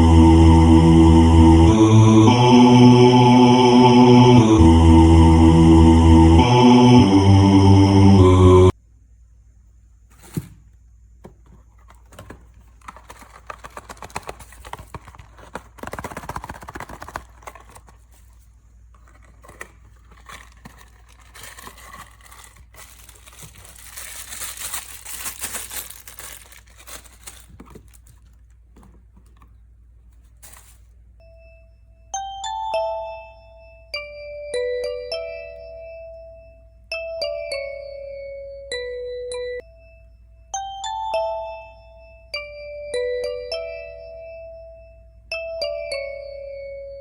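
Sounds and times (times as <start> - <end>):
wrapper crinkling and tearing: 12.0 - 18.4, 19.0 - 28.9, 30.4 - 30.9.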